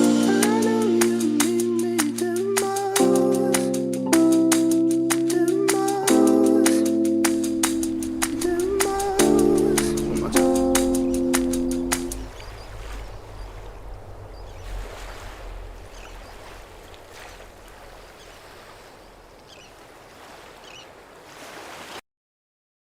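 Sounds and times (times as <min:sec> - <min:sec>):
steady rushing ambient noise: 0:06.9 - 0:19.4
low rumble: 0:07.9 - 0:17.6.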